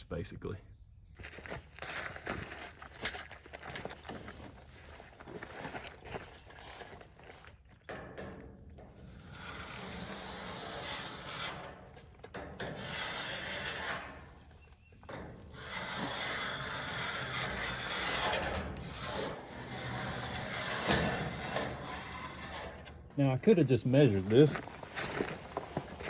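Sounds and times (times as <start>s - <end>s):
rough scraping and rubbing: 8.8s - 26.0s.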